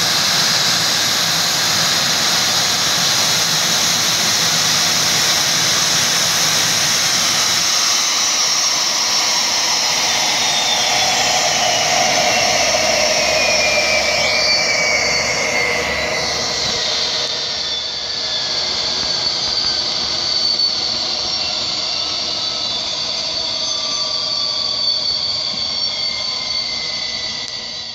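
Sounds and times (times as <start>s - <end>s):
steady rush: 0.0s - 20.1s
jet engines whining: 0.0s - 27.9s.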